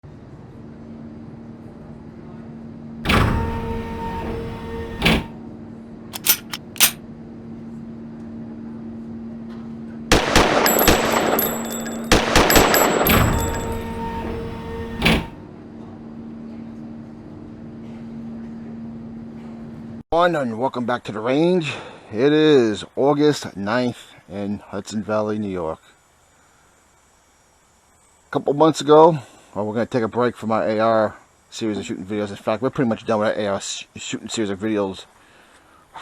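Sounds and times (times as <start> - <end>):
short sharp clicks: 6.2 - 7.0
rifle gunshots: 10.1 - 14.0.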